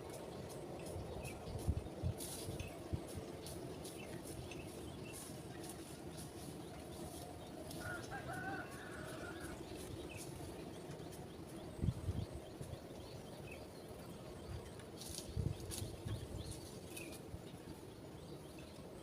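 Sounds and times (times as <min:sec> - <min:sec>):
outdoor background noise: 0:00.0 - 0:19.0
rooster crowing: 0:07.8 - 0:09.6.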